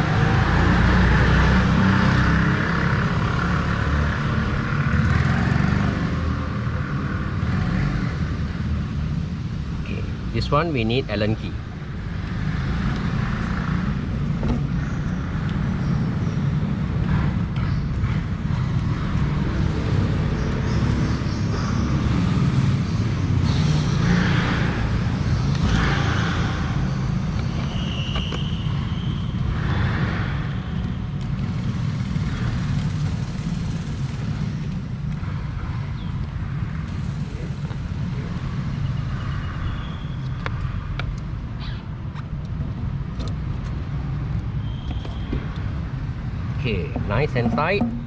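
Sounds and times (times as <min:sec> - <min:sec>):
low rumble of vehicle noise: 0:00.0 - 0:48.0
hand tool scraping: 0:46.9 - 0:48.0.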